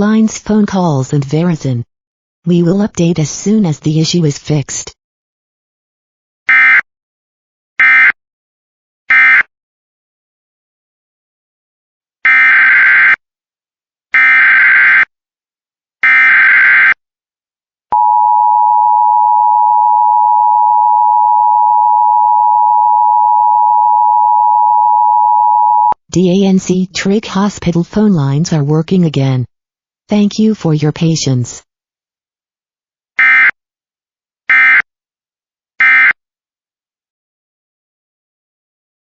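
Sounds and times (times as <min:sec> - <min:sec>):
steady attention tone: 0:18.0 - 0:26.0.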